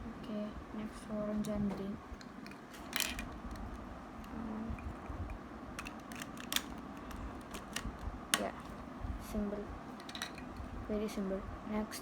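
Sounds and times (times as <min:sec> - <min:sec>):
plastic cube pieces clicking: 0:05.8 - 0:08.0.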